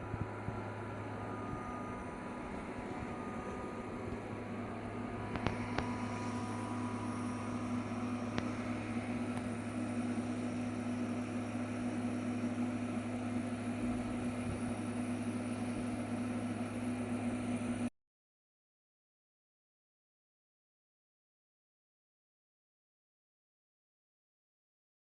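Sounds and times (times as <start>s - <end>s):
machine motor hum: 0.0s - 17.9s.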